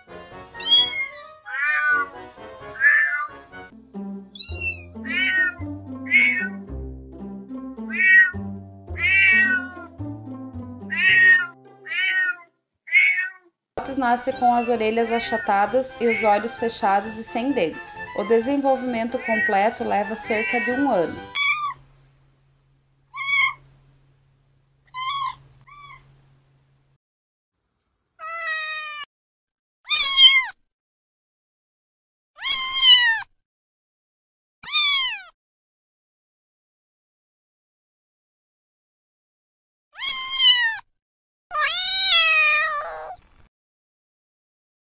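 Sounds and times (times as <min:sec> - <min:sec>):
background music: 0:00.0 - 0:12.2, 0:13.8 - 0:21.4
kittens meowing: 0:00.6 - 0:02.1, 0:02.8 - 0:03.3, 0:04.4 - 0:06.6, 0:07.9 - 0:09.9, 0:10.9 - 0:13.5, 0:20.4 - 0:21.8, 0:23.1 - 0:23.6, 0:24.9 - 0:26.1, 0:28.2 - 0:29.1, 0:29.9 - 0:30.5, 0:32.4 - 0:33.2, 0:34.7 - 0:35.3, 0:40.0 - 0:40.8, 0:41.5 - 0:43.2.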